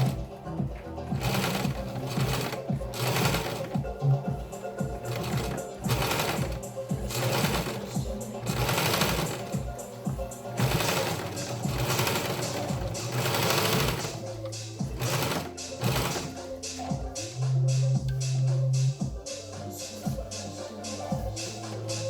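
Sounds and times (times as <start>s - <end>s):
sewing machine stitching: 0.0s - 16.9s
background music with a beat: 0.0s - 22.0s.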